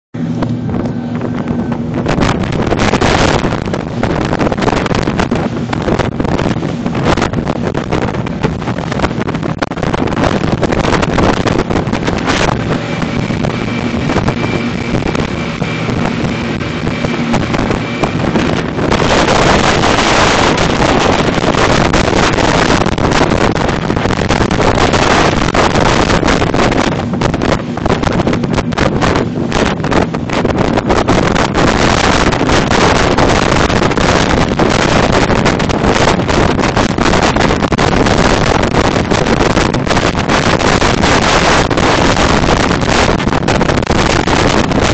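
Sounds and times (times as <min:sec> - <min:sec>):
boat engine running: 0:00.1 - 0:44.9
wind buffeting microphone: 0:00.1 - 0:44.9.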